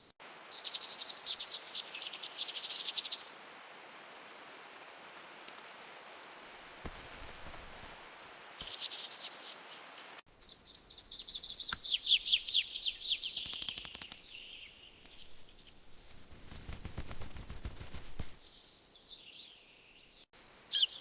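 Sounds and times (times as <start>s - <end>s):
bird singing high trill: 10.4s - 14.7s.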